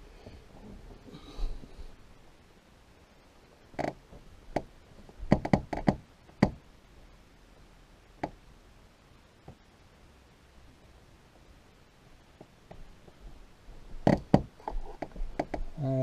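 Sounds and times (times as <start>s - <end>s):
sharp knocks and clicks: 3.8s - 6.6s, 13.9s - 15.7s.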